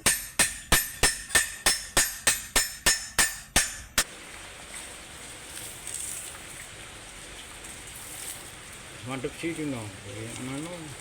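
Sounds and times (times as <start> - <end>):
hammer striking metal: 0.0 - 4.1.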